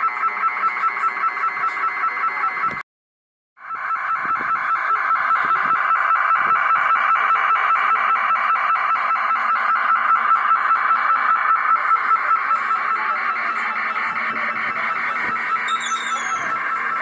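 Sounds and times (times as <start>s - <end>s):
telemetry data tones warbling: 12.4s - 17.0s.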